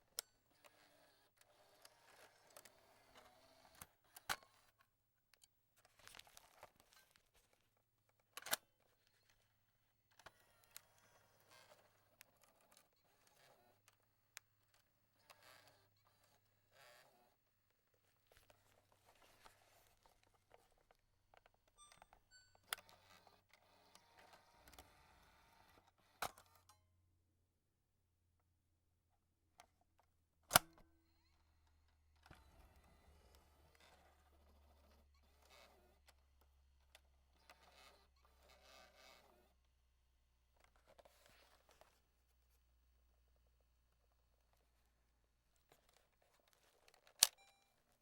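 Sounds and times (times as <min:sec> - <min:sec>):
cassette deck eject clicks: 0:30.5 - 0:30.9, 0:47.0 - 0:47.5
cassette mechanism clicks: 0:30.5 - 0:31.0, 0:45.7 - 0:47.8.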